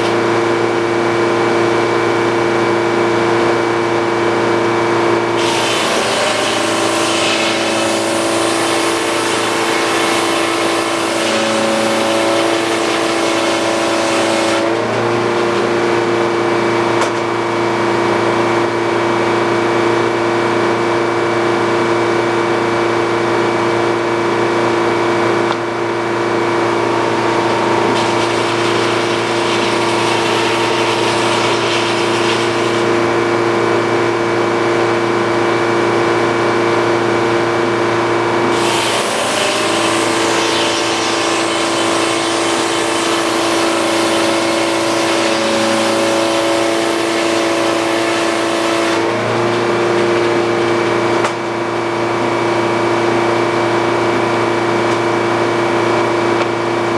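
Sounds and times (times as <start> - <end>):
sawmill engine running: 1.1 - 16.9, 24.9 - 52.6
saw blade cutting wood: 5.4 - 15.1, 27.2 - 33.3, 38.4 - 49.2.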